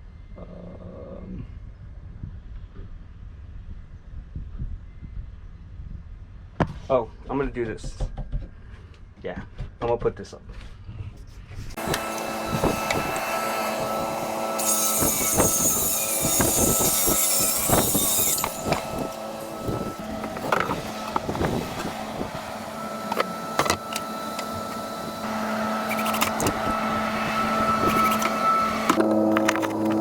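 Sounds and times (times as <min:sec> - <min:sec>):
steady droning tone: 0:18.4 - 0:30.0.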